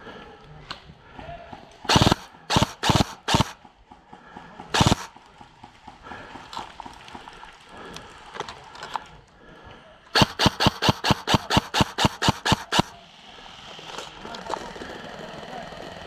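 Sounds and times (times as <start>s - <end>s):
airsoft gun rapid shots: 1.9s - 3.7s, 4.7s - 5.2s, 10.2s - 13.0s.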